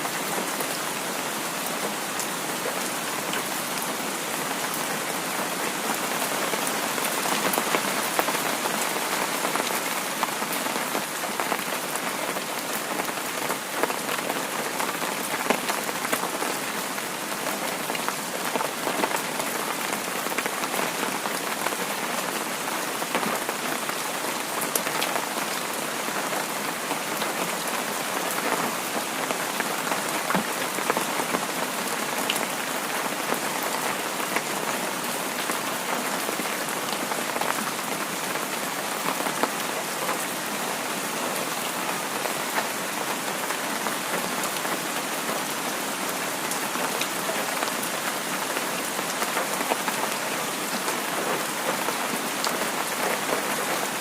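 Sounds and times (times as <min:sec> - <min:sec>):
heavy rain: 0:00.0 - 0:54.0
raindrops pattering on hard surfaces: 0:00.0 - 0:54.0.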